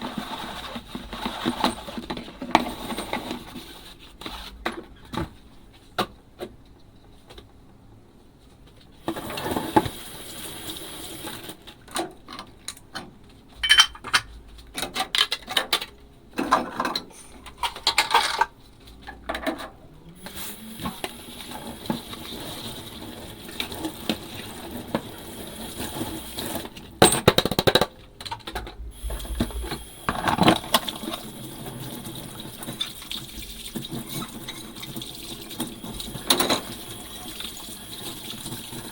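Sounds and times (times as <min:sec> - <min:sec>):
water running from a tap: 0:09.1 - 0:11.6, 0:20.2 - 0:26.7, 0:29.0 - 0:38.9
dishes clinking in a sink: 0:13.6 - 0:14.4, 0:35.8 - 0:38.4.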